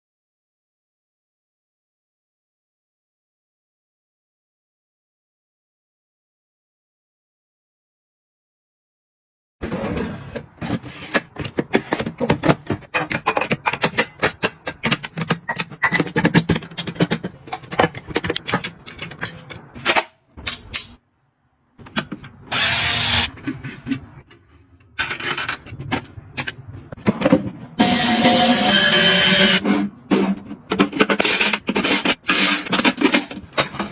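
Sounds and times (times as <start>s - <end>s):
kitchen items clicking and clattering: 9.6s - 21.0s, 23.3s - 33.9s.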